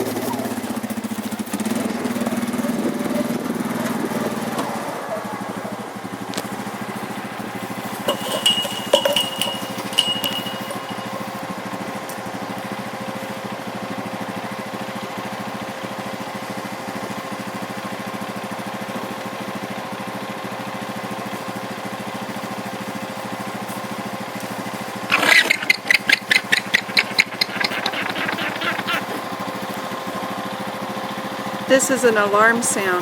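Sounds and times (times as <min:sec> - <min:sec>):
engine droning: 0:00.0 - 0:33.0
llama alarm call: 0:04.6 - 0:06.0, 0:25.1 - 0:29.5.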